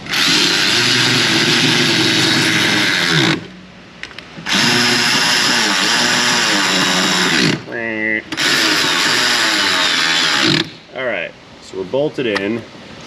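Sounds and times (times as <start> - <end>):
cordless power tool motor whine: 0.0 - 3.5, 4.4 - 7.6, 8.3 - 10.8.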